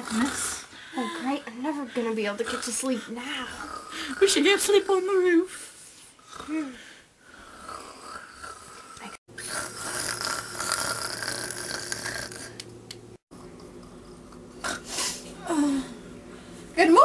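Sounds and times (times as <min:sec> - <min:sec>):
person snoring: 0:00.0 - 0:04.3, 0:06.2 - 0:12.6.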